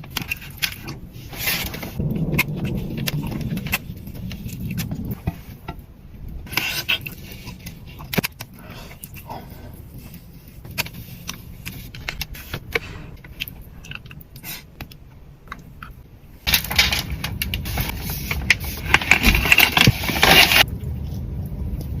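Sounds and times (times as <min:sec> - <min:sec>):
low rumble: 0:00.7 - 0:22.0
crunchy chocolate being chewed: 0:06.8 - 0:16.0.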